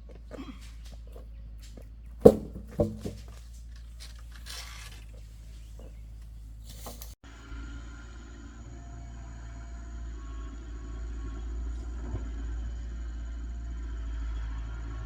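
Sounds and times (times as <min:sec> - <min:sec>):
steady engine hum: 0:00.0 - 0:15.0
loud knocks: 0:02.2 - 0:03.4.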